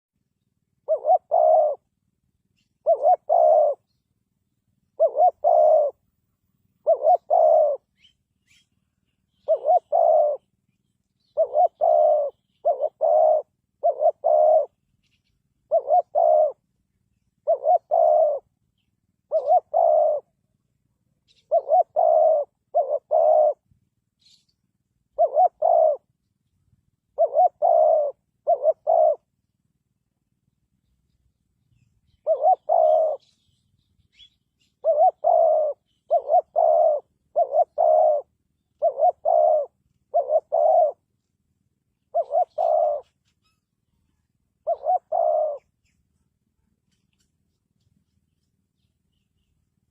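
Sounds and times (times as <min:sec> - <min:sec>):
dove cooing: 0:00.7 - 0:02.0, 0:02.6 - 0:04.0, 0:04.8 - 0:06.0, 0:06.8 - 0:08.7, 0:09.3 - 0:10.6, 0:11.2 - 0:18.6, 0:19.2 - 0:20.5, 0:21.2 - 0:24.5, 0:25.1 - 0:26.2, 0:27.0 - 0:29.4, 0:32.1 - 0:41.1, 0:42.0 - 0:46.3.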